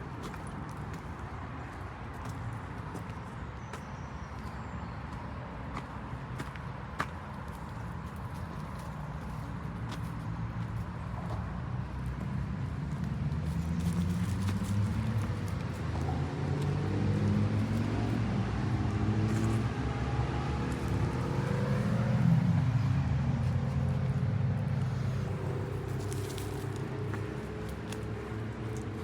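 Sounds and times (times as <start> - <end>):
vehicle engine running: 11.8 - 29.0.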